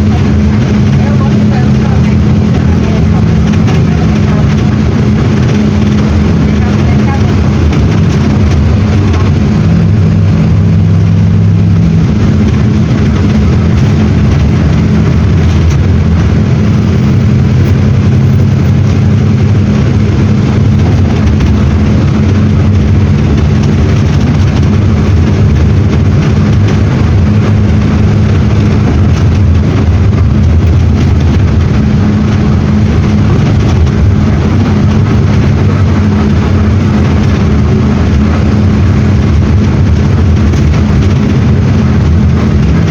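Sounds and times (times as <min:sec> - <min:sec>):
diesel bus engine running: 0:00.0 - 0:42.9.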